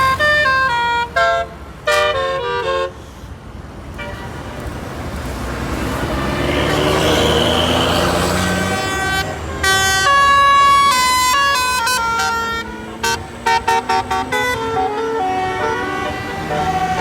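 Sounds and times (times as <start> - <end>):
multi-tone bus horn tune: 0.0 - 3.1, 3.9 - 4.7, 6.9 - 17.0
engine and traffic noise: 0.0 - 17.0
short horn blasts: 8.4 - 17.0.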